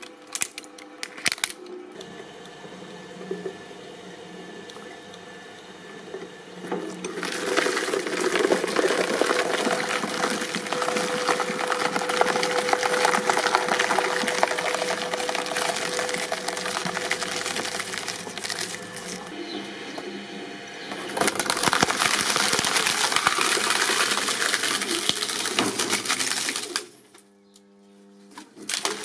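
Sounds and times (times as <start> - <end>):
brittle object crackling and snapping: 0.0 - 1.6, 7.4 - 19.3, 21.1 - 26.9
press machine hum: 1.6 - 27.5.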